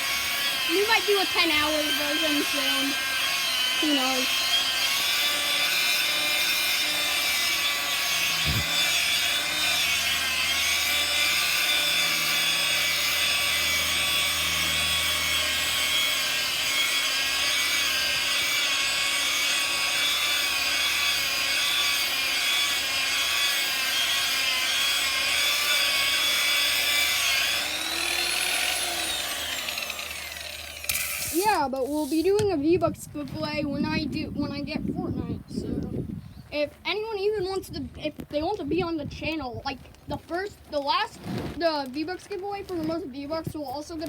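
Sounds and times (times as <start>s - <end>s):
power sander grinding on concrete: 0.0s - 32.5s.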